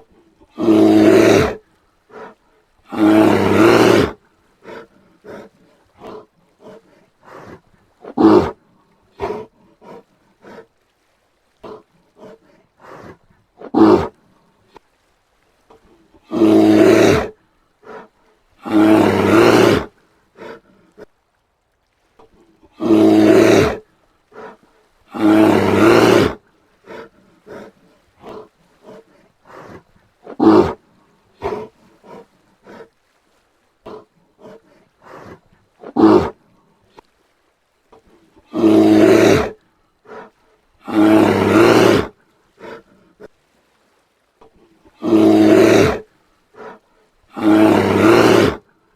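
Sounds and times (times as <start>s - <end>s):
bear roaring: 0.5s - 8.6s, 9.2s - 10.6s, 11.6s - 14.2s, 16.2s - 20.6s, 22.7s - 23.8s, 24.4s - 30.8s, 31.4s - 32.9s, 33.8s - 36.4s, 38.5s - 42.8s, 45.0s - 48.7s.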